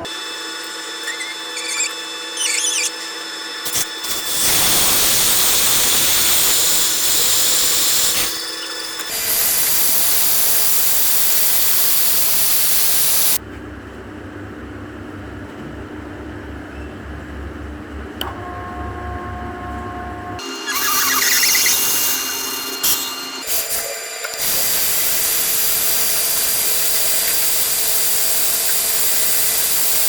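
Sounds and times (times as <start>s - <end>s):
power tool running: 0.0s - 13.4s, 20.4s - 30.0s
faint squeaks: 1.0s - 3.2s, 20.5s - 22.8s.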